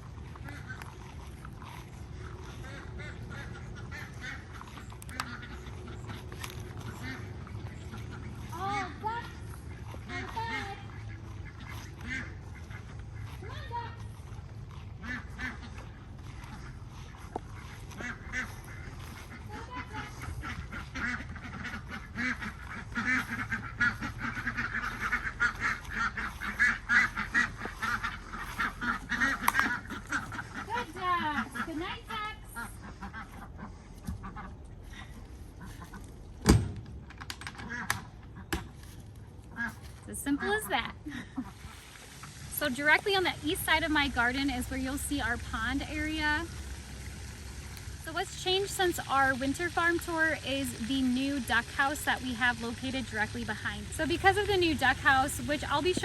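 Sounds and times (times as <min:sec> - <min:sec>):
ducks quacking: 0:00.0 - 0:36.6, 0:37.6 - 0:56.0
steady low rumble: 0:00.0 - 0:37.2.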